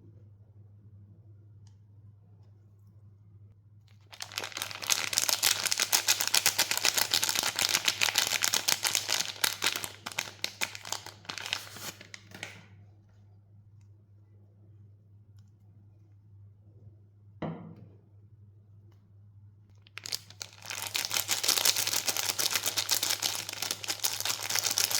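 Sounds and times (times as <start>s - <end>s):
wrapper crinkling and tearing: 3.9s - 12.4s, 19.8s - 24.9s.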